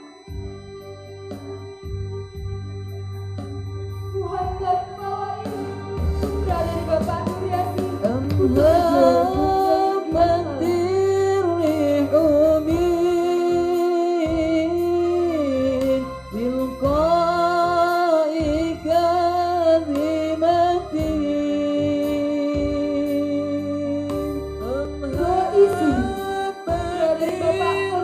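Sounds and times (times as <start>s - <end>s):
low instrumental backing: 0.0s - 28.0s
man singing slow melody: 8.0s - 28.0s.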